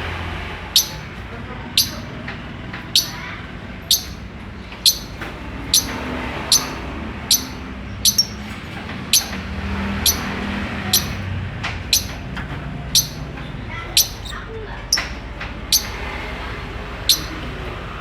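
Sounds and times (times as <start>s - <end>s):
lovebird chirping: 0.7s - 1.1s, 1.7s - 2.2s, 2.9s - 11.3s, 11.9s - 12.3s, 12.9s - 16.2s, 17.0s - 17.5s.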